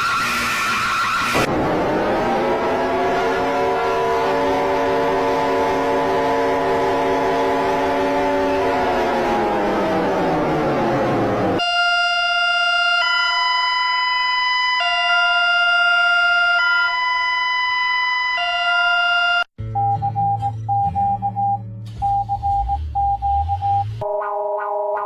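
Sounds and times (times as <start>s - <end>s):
two-tone alarm: 0.0s - 1.5s, 11.6s - 25.0s
falling siren: 0.0s - 19.5s
short pulsing beeps: 19.8s - 24.0s.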